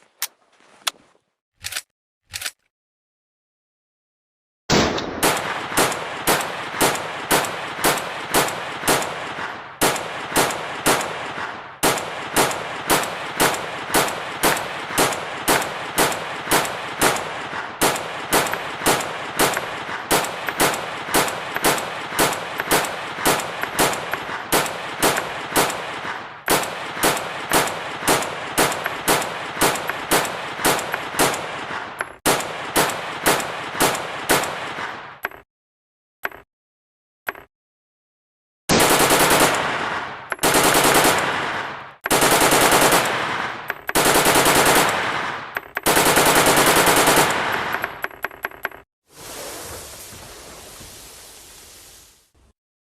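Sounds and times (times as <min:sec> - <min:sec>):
machine gun firing: 0:04.7 - 0:35.1, 0:38.7 - 0:48.1.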